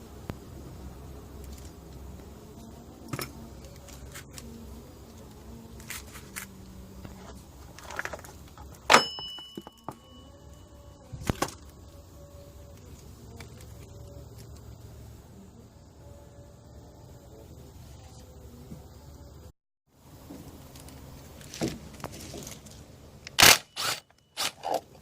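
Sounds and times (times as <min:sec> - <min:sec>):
metal tools clinking and tapping: 0:08.9 - 0:10.2
sharp metallic clank: 0:08.9 - 0:10.3.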